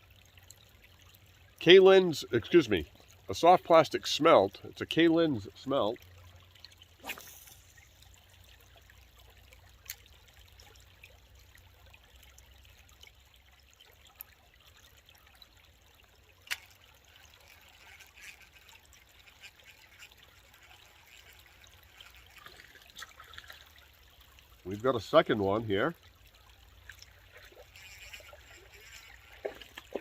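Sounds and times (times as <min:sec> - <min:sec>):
water trickling: 0:00.0 - 0:30.0.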